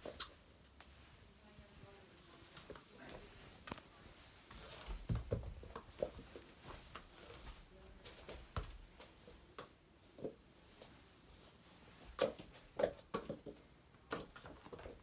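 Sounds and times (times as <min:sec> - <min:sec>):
ball taps and thumps: 0:04.9 - 0:06.3, 0:12.2 - 0:15.0.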